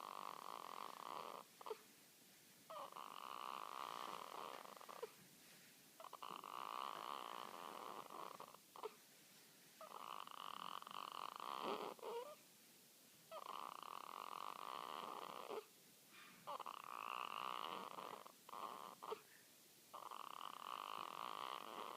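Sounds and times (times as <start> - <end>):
baby snoring: 0.0 - 1.8, 2.7 - 5.2, 6.0 - 9.0, 9.8 - 12.4, 13.3 - 15.7, 16.4 - 19.2, 19.9 - 21.9.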